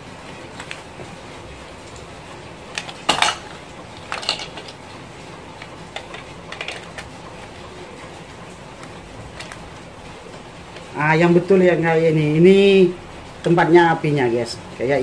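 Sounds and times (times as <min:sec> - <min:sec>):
plastic and metal parts clattering: 0:04.1 - 0:04.8.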